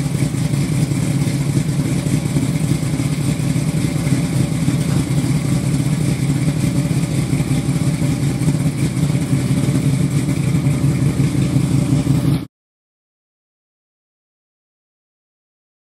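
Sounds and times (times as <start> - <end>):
truck engine idling: 0.0 - 12.5.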